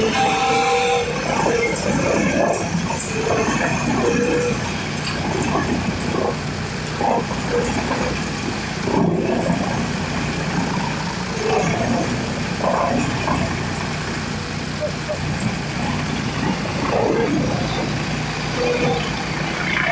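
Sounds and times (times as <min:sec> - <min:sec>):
high-pitched squeals: 0:00.0 - 0:06.3, 0:10.7 - 0:19.9
wood chipper running: 0:00.0 - 0:19.9.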